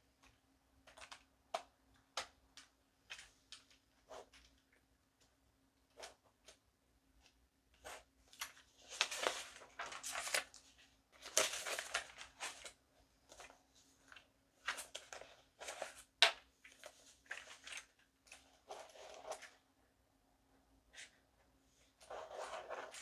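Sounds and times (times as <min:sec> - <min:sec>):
paper rustling and crinkling: 0:07.8 - 0:19.6, 0:21.8 - 0:23.0
paper crackle: 0:07.9 - 0:13.5.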